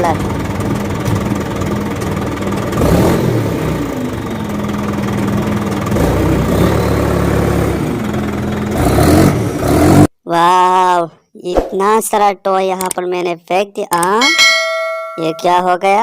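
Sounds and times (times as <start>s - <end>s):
toy truck engine idling and revving: 0.0s - 10.1s.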